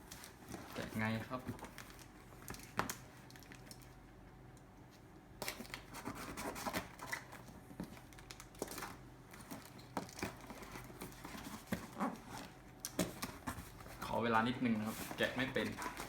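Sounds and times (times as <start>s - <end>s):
cardboard rustling and tearing: 5.5s - 16.0s.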